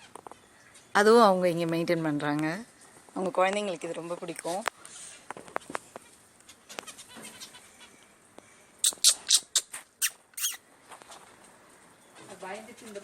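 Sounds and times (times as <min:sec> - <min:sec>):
pet birds chirping: 0:06.4 - 0:08.2, 0:08.8 - 0:10.6.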